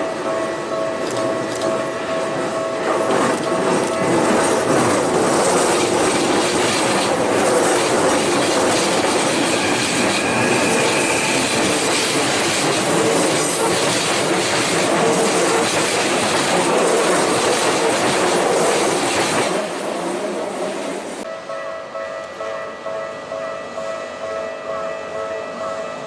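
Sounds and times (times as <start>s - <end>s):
train wheels running over rails: 0.0s - 21.3s
high wheel squeal: 8.6s - 14.1s.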